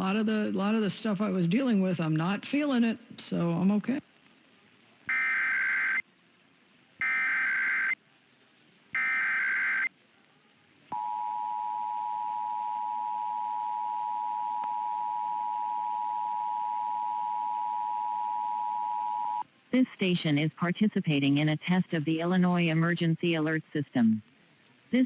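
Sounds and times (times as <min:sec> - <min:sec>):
warbling data burst squawks: 0:05.1 - 0:06.0, 0:07.0 - 0:08.0, 0:09.0 - 0:09.9
steady two-tone attention signal: 0:11.0 - 0:19.4.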